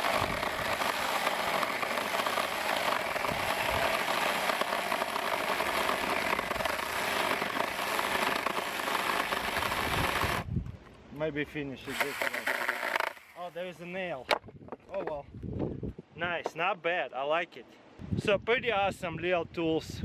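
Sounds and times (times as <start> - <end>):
mini chainsaw cutting wood: 0.0 - 10.5, 11.8 - 13.5.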